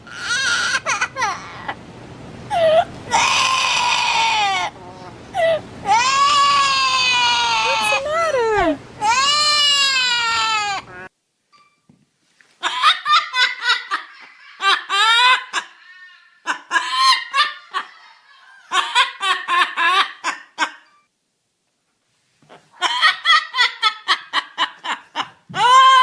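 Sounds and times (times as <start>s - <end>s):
high-pitched wailing cry: 0.0s - 1.8s, 2.5s - 11.1s, 14.4s - 20.0s, 25.5s - 26.0s
rapid laugh-like calls: 12.6s - 20.9s, 22.5s - 26.0s.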